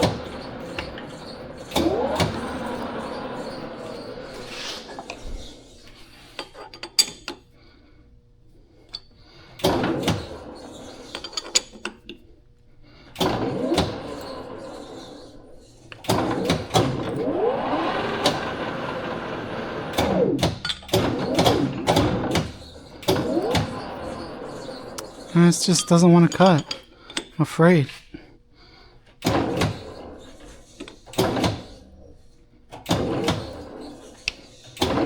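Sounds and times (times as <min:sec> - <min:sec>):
metal lathe motor: 0:00.0 - 0:05.8, 0:21.0 - 0:25.9.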